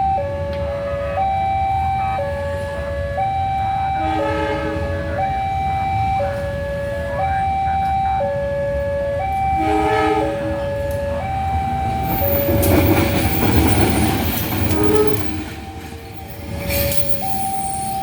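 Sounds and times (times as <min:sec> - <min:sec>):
passing train rumble: 0:00.0 - 0:18.0
two-tone crossing alarm: 0:00.0 - 0:18.0
train horn blasts: 0:03.9 - 0:05.3, 0:09.6 - 0:11.1, 0:13.4 - 0:16.4.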